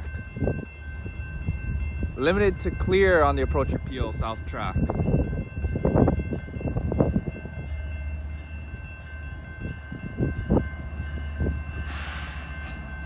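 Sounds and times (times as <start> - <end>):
freight train rumble: 0.0 - 13.0
brief hiss: 11.9 - 12.6.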